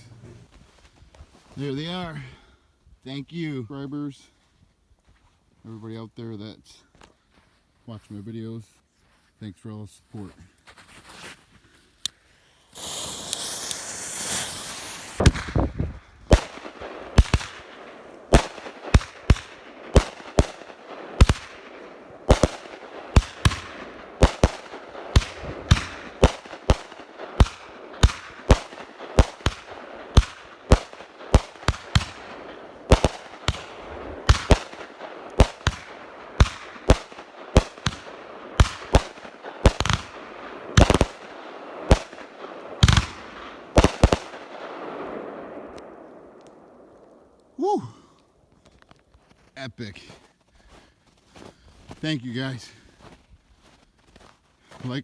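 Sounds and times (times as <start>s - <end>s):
fuse hissing: 12.6s - 15.2s
fireworks shots and bangs: 12.8s - 46.9s.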